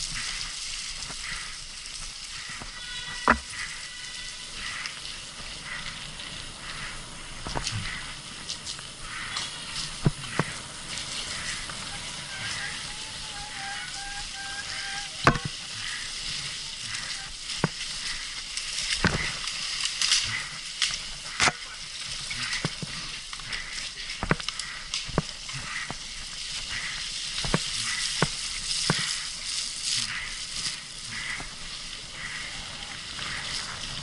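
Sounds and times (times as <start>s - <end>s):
bike tyres hissing on trail: 0.0s - 34.0s
bike knocks and rattles: 15.2s - 15.6s.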